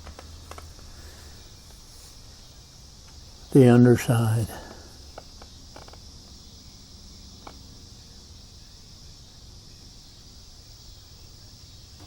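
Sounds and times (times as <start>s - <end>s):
high hiss: 0.0s - 8.5s.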